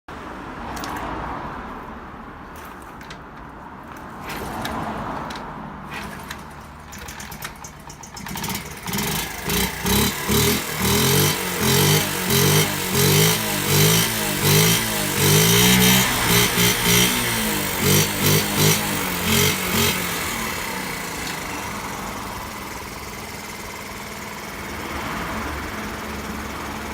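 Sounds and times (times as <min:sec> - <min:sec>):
engine clicks and clatter: 0:02.6 - 0:26.9
small engine revving: 0:05.9 - 0:26.9.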